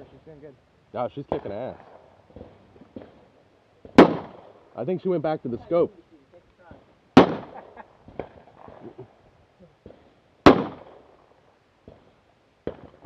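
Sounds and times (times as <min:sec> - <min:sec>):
faint gunshot cracks: 0:03.8 - 0:04.6, 0:07.2 - 0:08.9, 0:09.8 - 0:11.1
loud rifle shots: 0:03.8 - 0:04.7, 0:07.2 - 0:08.9, 0:09.9 - 0:11.3.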